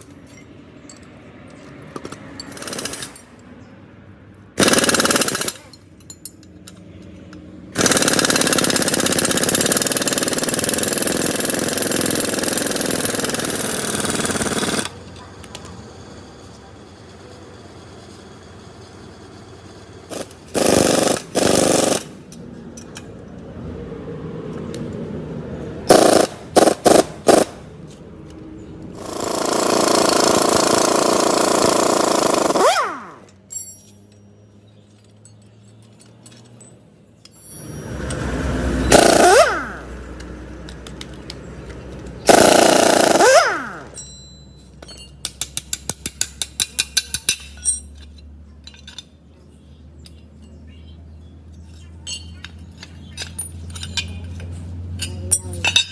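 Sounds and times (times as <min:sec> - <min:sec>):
pneumatic impact wrench bursts: 0:04.6 - 0:05.7, 0:07.8 - 0:15.0, 0:20.1 - 0:22.3, 0:25.9 - 0:27.7, 0:29.0 - 0:33.3, 0:37.5 - 0:40.1, 0:42.2 - 0:44.1
fast clicks: 0:38.9 - 0:44.0.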